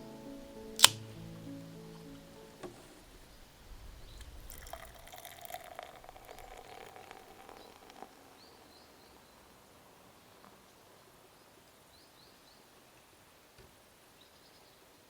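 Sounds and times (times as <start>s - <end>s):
small clicks: 0.8s - 1.0s
liquid pouring: 4.0s - 9.0s.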